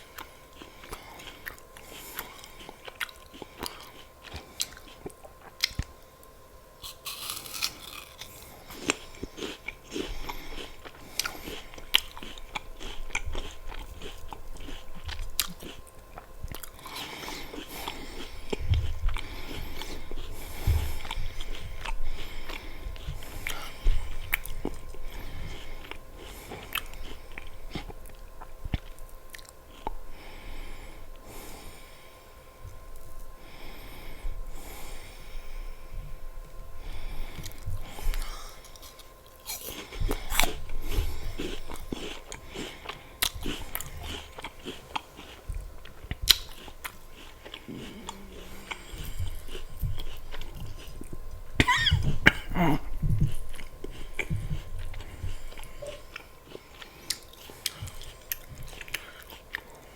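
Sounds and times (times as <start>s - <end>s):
crisp apple crunches: 6.8s - 30.0s, 37.5s - 51.1s.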